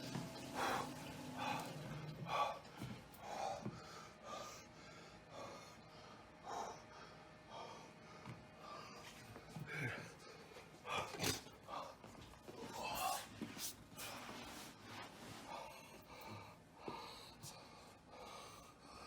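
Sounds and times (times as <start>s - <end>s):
low steady hum: 0.0s - 19.0s
man breathing heavily: 0.4s - 19.0s.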